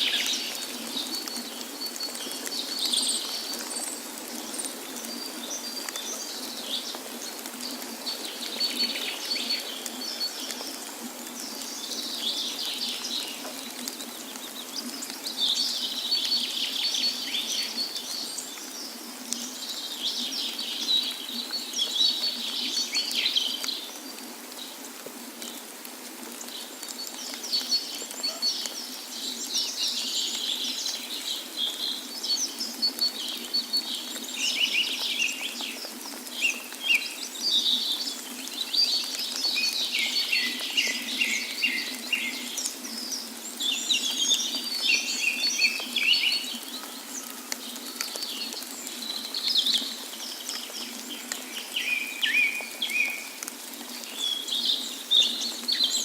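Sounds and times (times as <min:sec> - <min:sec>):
rushing water: 0:00.0 - 0:56.0
songbirds chirping and trilling: 0:26.6 - 0:56.0.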